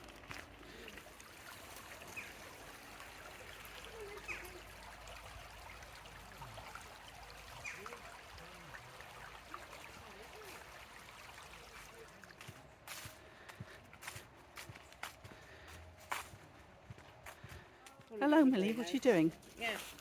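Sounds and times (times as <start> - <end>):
water trickling: 0.0 - 13.6, 18.2 - 20.0
faint distant voices: 0.6 - 19.8.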